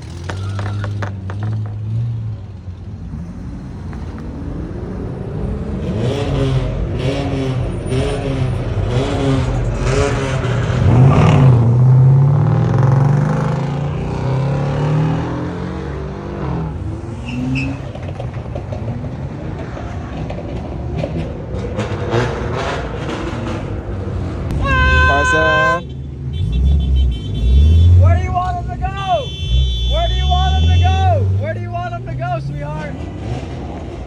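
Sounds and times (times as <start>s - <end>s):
car engine revving: 0.0s - 34.0s
car accelerating past: 3.0s - 24.9s.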